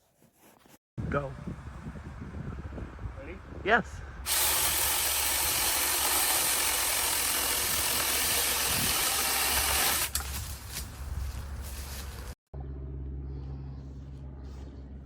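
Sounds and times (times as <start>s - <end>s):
mini chainsaw whirring: 4.3s - 10.2s.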